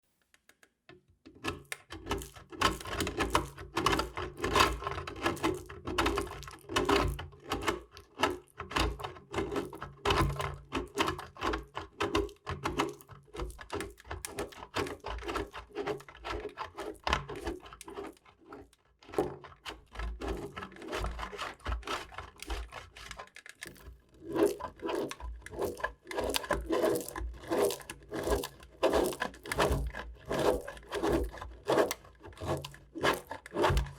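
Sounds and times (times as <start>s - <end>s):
knife slicing soap: 9.0s - 33.9s.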